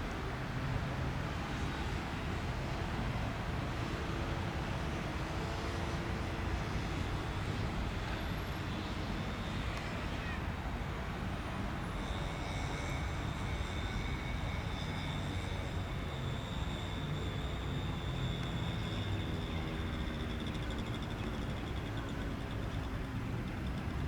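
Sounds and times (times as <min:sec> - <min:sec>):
high turbine whine: 0:11.6 - 0:23.0.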